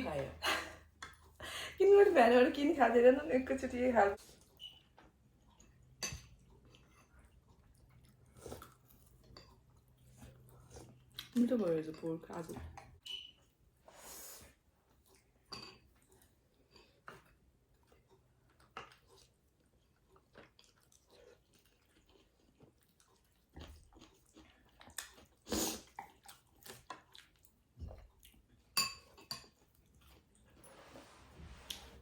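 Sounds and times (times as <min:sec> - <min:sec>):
quiet chewing: 0:04.2 - 0:13.6, 0:14.5 - 0:32.0
utensils clinking on dishes: 0:28.8 - 0:29.6.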